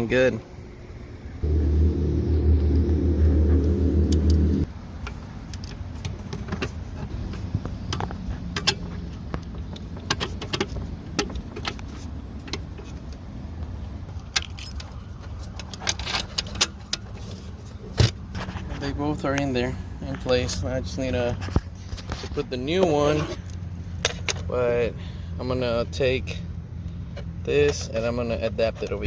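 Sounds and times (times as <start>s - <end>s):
loud low buzz: 1.4s - 4.7s.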